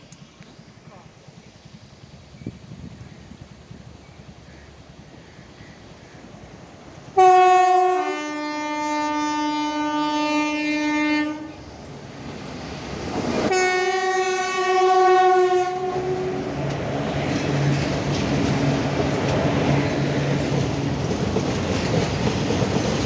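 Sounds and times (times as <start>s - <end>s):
approaching train rumble: 0.0s - 23.0s
locomotive horn blasts: 7.2s - 11.6s, 13.5s - 16.5s.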